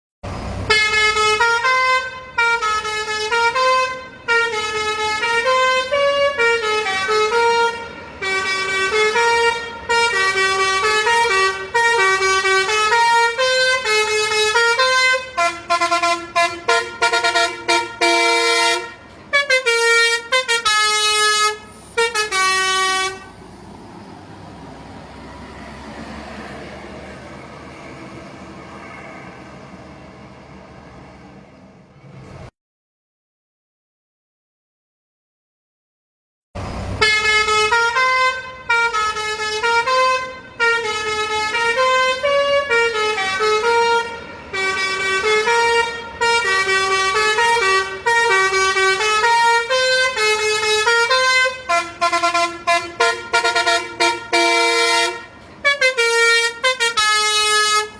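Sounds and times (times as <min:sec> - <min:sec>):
multi-tone musical bus horn: 0:00.6 - 0:23.5, 0:36.9 - 0:57.9.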